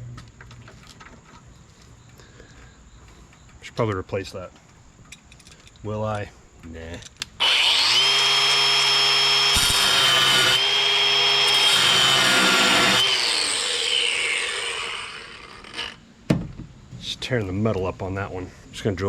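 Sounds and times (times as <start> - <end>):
power tool whining on metal: 7.4 - 16.0.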